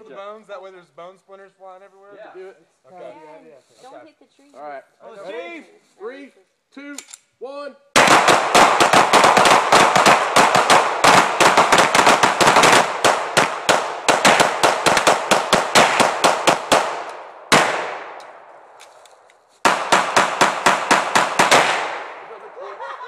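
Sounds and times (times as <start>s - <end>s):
rapid gunshots: 8.0s - 18.2s, 19.6s - 22.4s
single gunshot: 8.0s - 18.2s, 19.7s - 22.2s.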